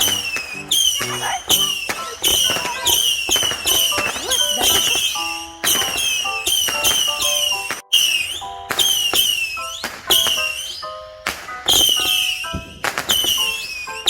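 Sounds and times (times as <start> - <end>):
high falling whistle: 0.0 - 11.0
fireworks cracking: 0.0 - 14.0.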